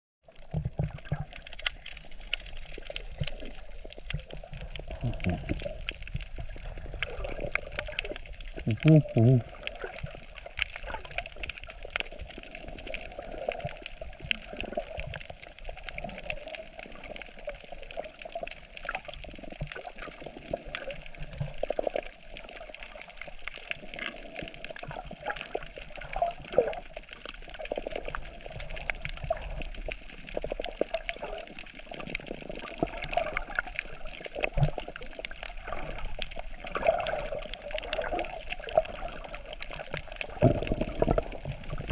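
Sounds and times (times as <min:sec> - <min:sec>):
small clicks and crackles: 0:00.2 - 0:41.9
water sloshing and gurgling: 0:00.2 - 0:41.9.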